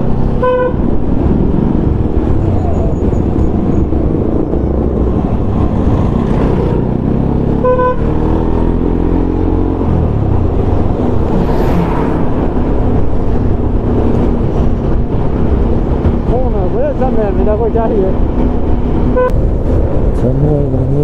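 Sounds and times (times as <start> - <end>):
motorcycle engine rumbling: 0.0 - 21.0
motorcycle horn beep: 0.4 - 0.8, 7.6 - 8.1.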